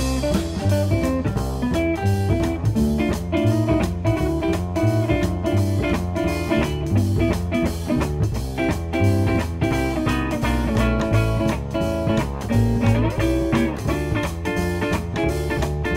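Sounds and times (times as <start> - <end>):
electric guitar: 0.0 - 15.9
live band instrumental: 0.0 - 15.9.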